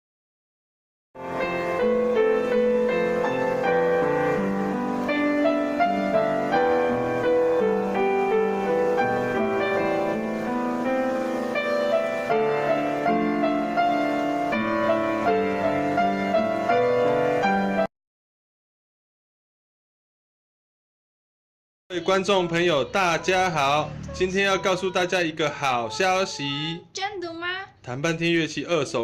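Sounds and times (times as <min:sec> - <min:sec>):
piano piece: 0:01.2 - 0:17.9, 0:21.9 - 0:26.4.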